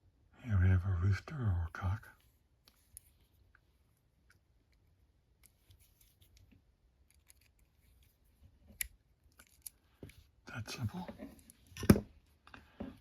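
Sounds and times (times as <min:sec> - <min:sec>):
lock pick clicking and scraping: 0:07.1 - 0:07.8, 0:08.7 - 0:09.8.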